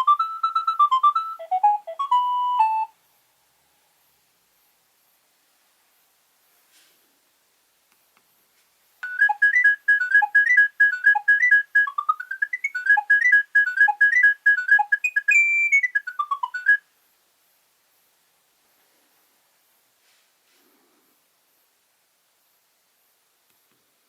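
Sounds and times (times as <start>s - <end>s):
mobile phone ringtone melody: 0.0s - 2.9s, 9.0s - 16.8s.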